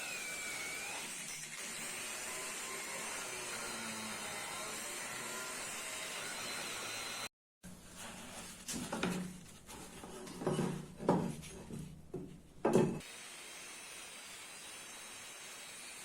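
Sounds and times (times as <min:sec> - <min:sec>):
rubbing and scraping strokes: 0:07.7 - 0:12.6.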